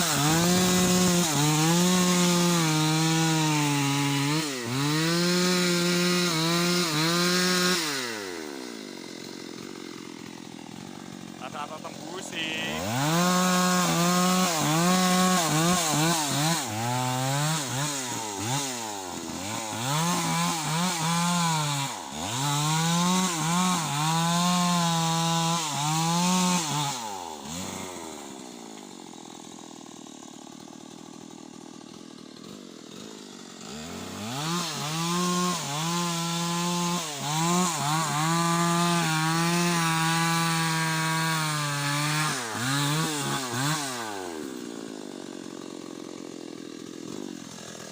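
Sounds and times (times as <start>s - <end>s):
chainsaw revving while cutting wood: 0.0s - 47.9s.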